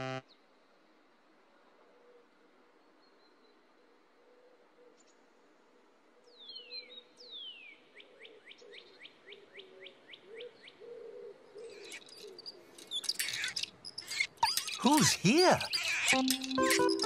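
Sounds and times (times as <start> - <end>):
bird whistling and chirping: 12.9 - 17.0.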